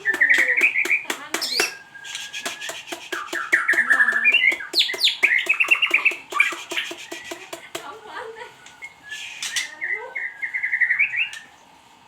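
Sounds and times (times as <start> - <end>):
sharp clicks: 0.0 - 7.9
bird singing: 0.0 - 11.7.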